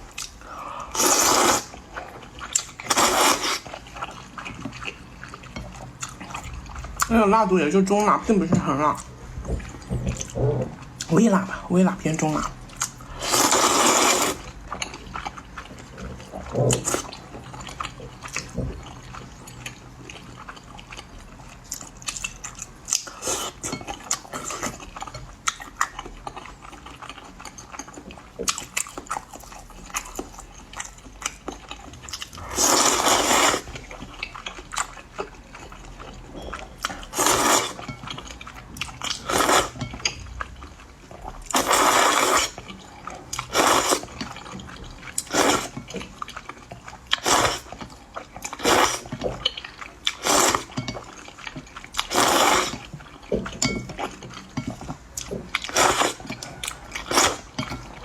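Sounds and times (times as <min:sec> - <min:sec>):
chewing: 0:00.0 - 0:07.1, 0:12.4 - 0:58.0
wet slurping of noodles: 0:00.9 - 0:01.7, 0:13.2 - 0:14.4, 0:32.4 - 0:33.7, 0:41.6 - 0:42.6, 0:43.5 - 0:44.1, 0:50.2 - 0:50.6, 0:52.1 - 0:52.8, 0:55.7 - 0:56.2.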